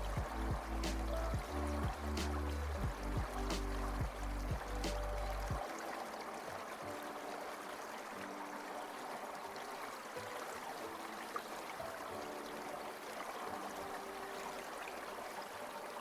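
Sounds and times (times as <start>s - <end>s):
low bass note: 0.0s - 5.6s
water stream flowing: 0.0s - 16.0s.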